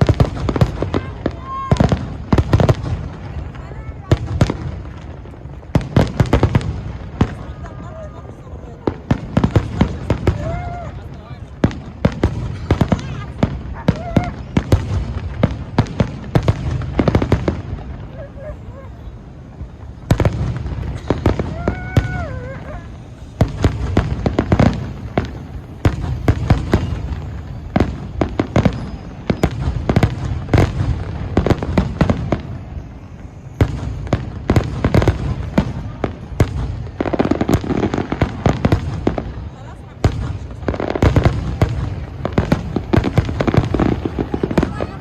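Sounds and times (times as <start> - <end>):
firework bangs and crackles: 0.0 - 45.0.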